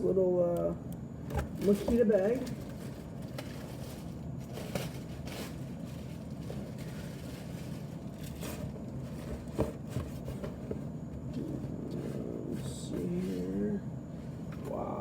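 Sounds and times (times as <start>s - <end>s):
low steady hum: 0.0s - 15.0s
tool bag handling clicks and scrapes: 1.5s - 10.7s.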